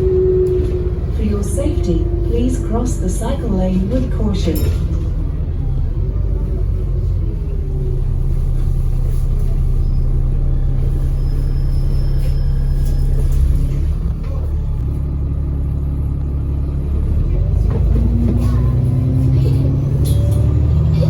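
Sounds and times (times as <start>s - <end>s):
bus diesel engine drone: 0.0s - 21.0s.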